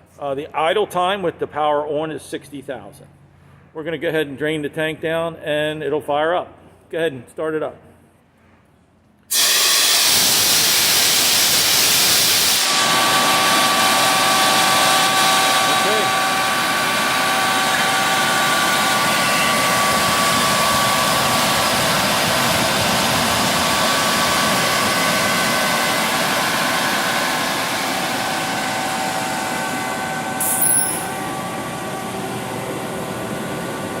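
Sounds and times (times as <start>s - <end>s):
short sharp air hiss: 9.2s - 12.8s, 30.4s - 31.0s
air compressor whining: 9.3s - 34.0s.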